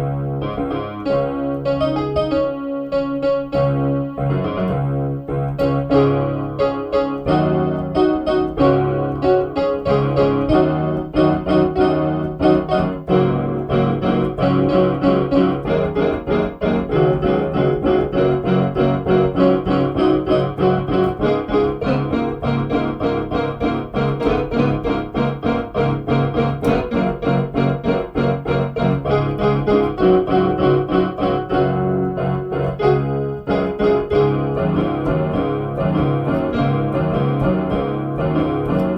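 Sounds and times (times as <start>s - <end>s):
electronic keyboard piano music: 0.0s - 38.9s.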